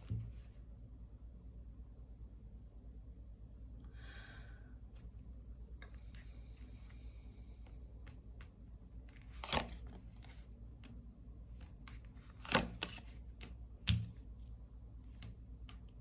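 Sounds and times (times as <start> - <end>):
cards clicking and rustling: 7.6 - 14.3
cards slapping on table: 8.0 - 10.3, 11.6 - 14.2.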